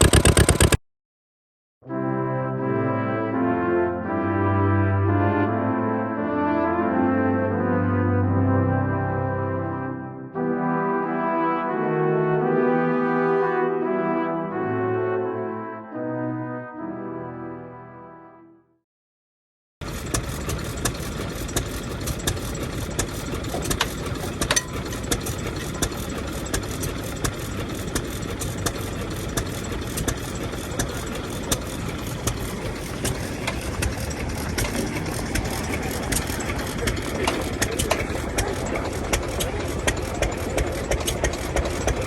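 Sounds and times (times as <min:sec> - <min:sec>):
engine ticks and knocks: 0:00.0 - 0:00.8, 0:19.8 - 0:42.0
kerosene engine running: 0:00.0 - 0:00.8, 0:19.8 - 0:42.0.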